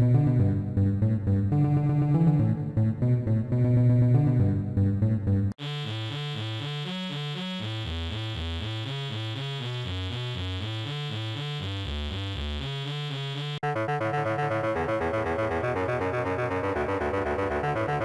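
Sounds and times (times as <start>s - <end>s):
electronic synthesizer music: 5.6s - 18.0s.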